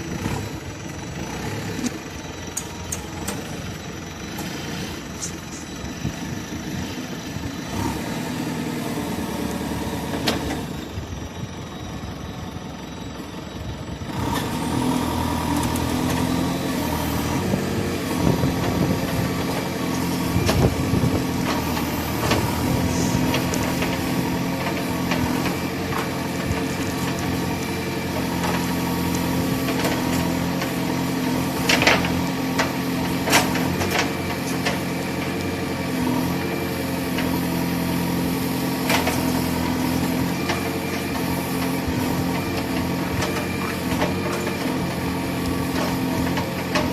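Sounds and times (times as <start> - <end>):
heavy machinery diesel engines running: 0.0 - 46.9.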